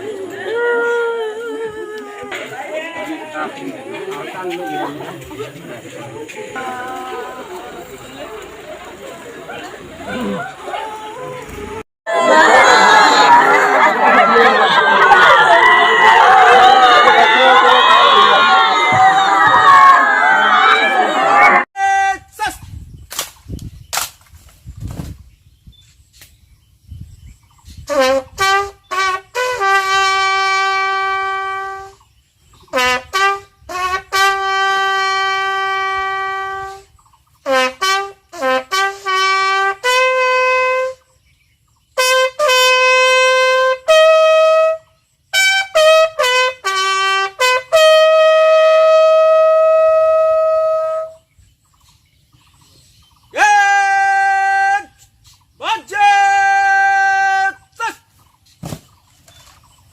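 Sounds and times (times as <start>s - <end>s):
solo bugle call: 27.9s - 32.0s, 32.7s - 41.0s, 42.0s - 51.2s.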